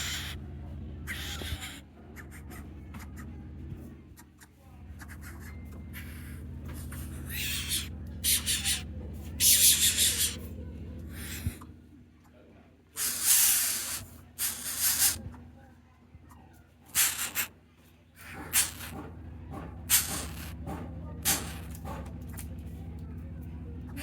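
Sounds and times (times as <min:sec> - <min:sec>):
steady low hum: 0:00.0 - 0:24.0
short hissing bursts: 0:13.0 - 0:15.2, 0:17.0 - 0:17.5.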